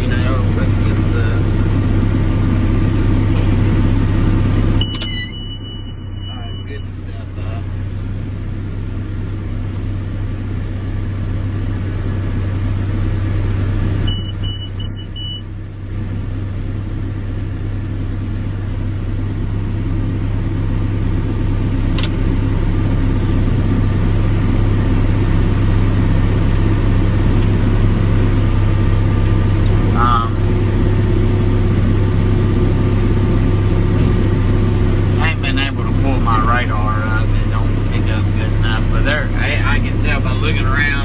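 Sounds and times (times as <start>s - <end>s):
tractor engine drone: 0.0s - 41.0s
high electronic beeps: 4.8s - 7.0s, 14.1s - 15.5s.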